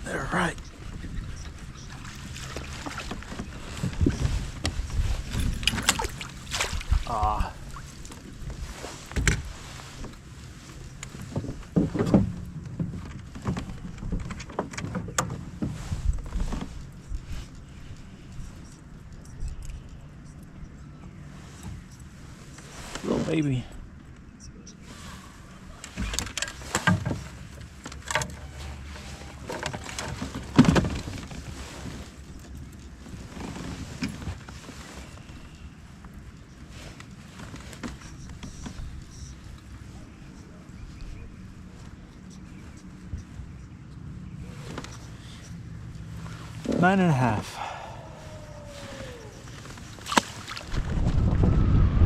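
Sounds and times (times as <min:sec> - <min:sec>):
knocks and clicks on a kayak: 0:10.8 - 0:16.3, 0:25.9 - 0:31.5
low rumble: 0:47.6 - 0:52.0.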